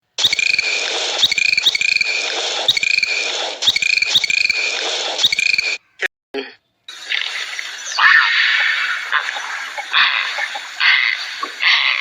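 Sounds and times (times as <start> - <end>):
bird chirps: 0.2 - 5.8
steady background hiss: 6.9 - 12.0.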